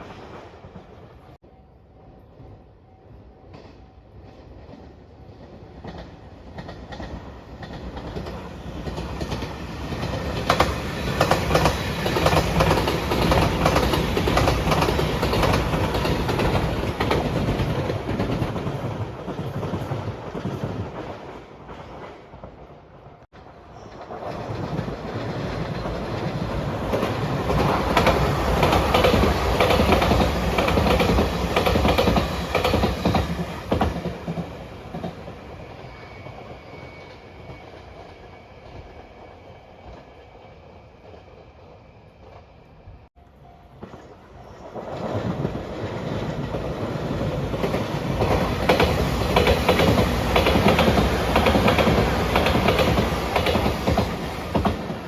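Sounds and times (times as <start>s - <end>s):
electric train passing at speed: 0.0s - 55.0s
wheels clacking over rail joints: 5.8s - 22.2s, 24.0s - 35.3s, 44.7s - 55.0s.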